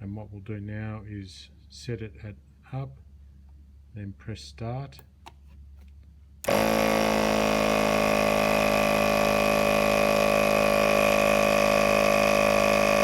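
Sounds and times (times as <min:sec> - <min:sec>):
electric air compressor running: 0:06.4 - 0:13.0.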